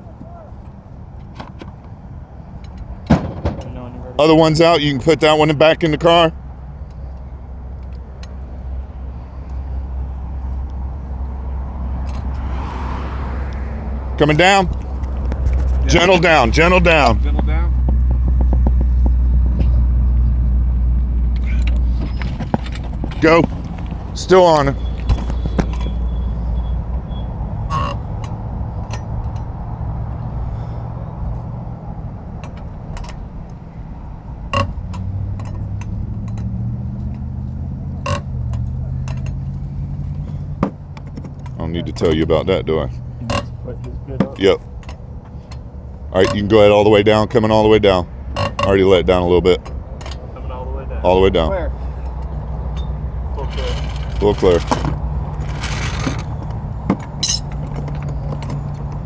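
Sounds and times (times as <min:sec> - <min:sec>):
ringing metallic clank: 0:03.1 - 0:04.0
metal tools clinking: 0:52.7 - 0:58.8.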